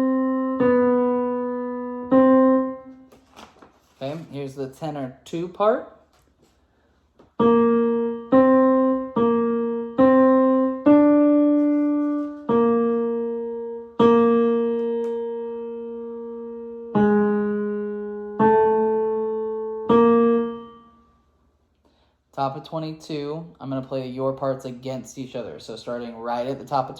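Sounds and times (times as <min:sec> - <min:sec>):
piano single-note melody: 0:00.0 - 0:03.1, 0:07.4 - 0:21.3.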